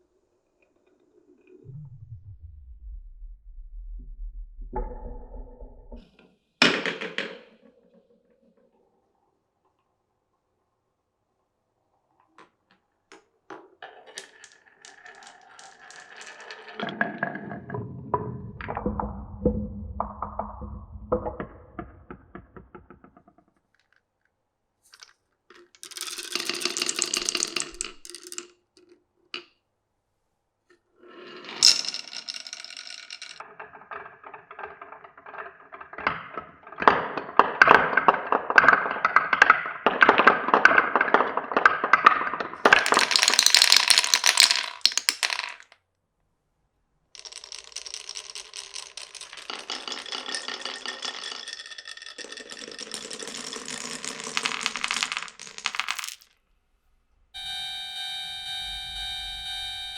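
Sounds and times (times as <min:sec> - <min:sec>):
low rolling rumble: 0:01.7 - 0:06.0
marbles rolling and clicking on tracks: 0:13.2 - 0:24.3, 0:24.9 - 0:29.0, 0:31.2 - 0:45.8, 0:47.2 - 0:56.4.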